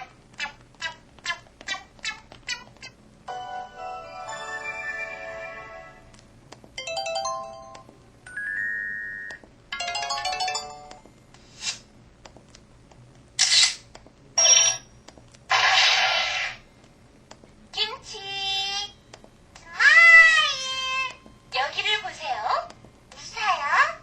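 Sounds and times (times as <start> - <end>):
phone melody: 3.3 - 6.0, 6.8 - 11.0.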